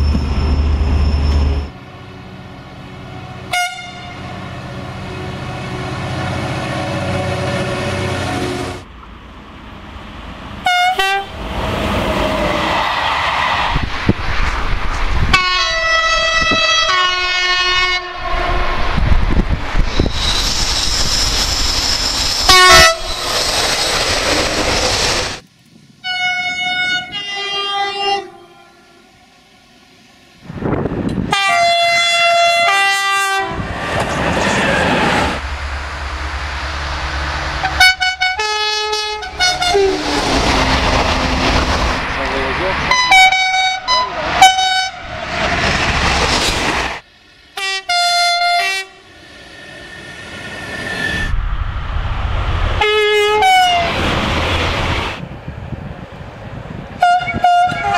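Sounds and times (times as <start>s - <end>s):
train rushing on rails: 0.0s - 57.9s
two-tone train horn blasts: 3.4s - 8.8s, 10.6s - 11.4s, 15.3s - 18.8s, 22.5s - 23.0s, 26.0s - 29.1s, 31.2s - 33.6s, 37.6s - 40.3s, 42.9s - 45.1s, 47.6s - 49.1s, 52.8s - 53.9s, 57.0s - 57.9s.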